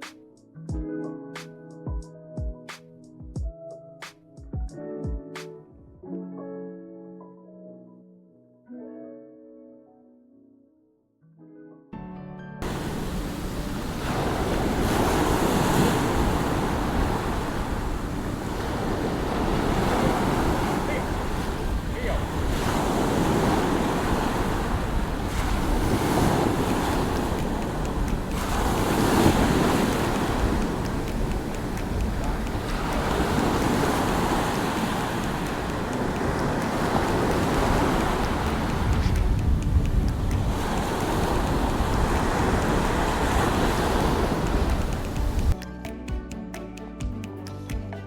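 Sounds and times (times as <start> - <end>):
surf breaking on beach: 12.6 - 45.6
wind gusting over microphone: 12.6 - 45.6.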